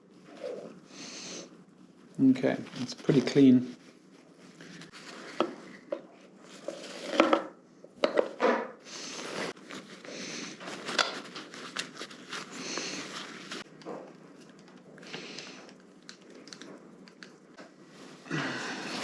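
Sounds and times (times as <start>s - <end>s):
rustling: 1.9s - 7.4s, 9.0s - 17.2s.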